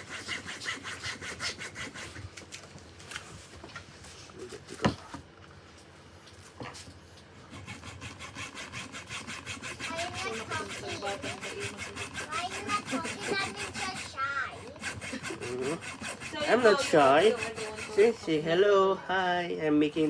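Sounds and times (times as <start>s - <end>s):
saw cutting bamboo: 0.0s - 2.5s, 7.5s - 18.4s.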